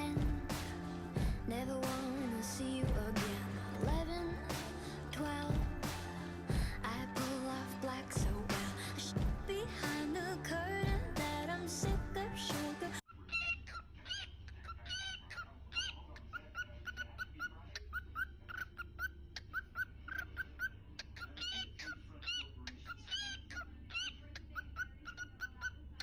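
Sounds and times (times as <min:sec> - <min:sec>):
parrots chirping: 0:13.1 - 0:26.0.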